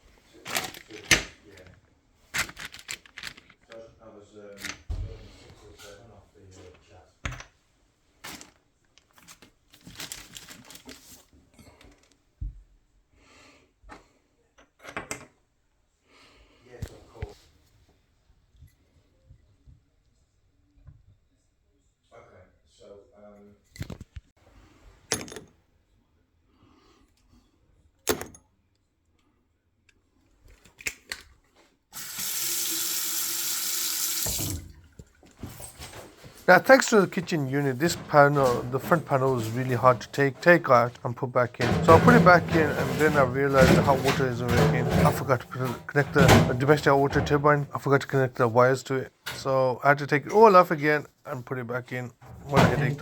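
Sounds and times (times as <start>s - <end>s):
packaging crinkling and rustling: 0.4s - 3.8s, 8.2s - 11.3s
water running from tap: 32.0s - 34.7s.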